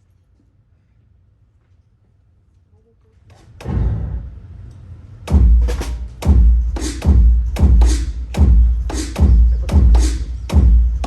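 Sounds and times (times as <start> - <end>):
heavy drum hits: 3.6 - 4.4, 5.3 - 11.0.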